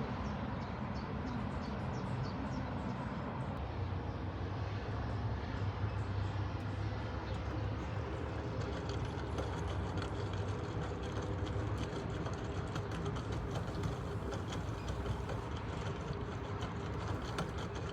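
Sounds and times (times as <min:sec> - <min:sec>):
washing machine motor hum: 0:12.5 - 0:17.9.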